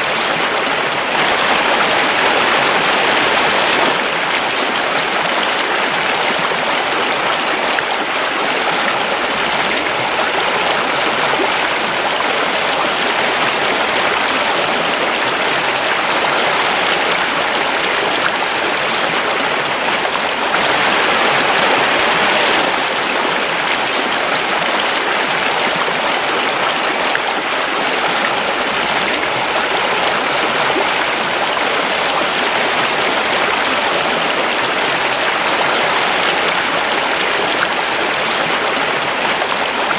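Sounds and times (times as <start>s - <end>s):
river flowing over rocks: 0.0s - 39.9s.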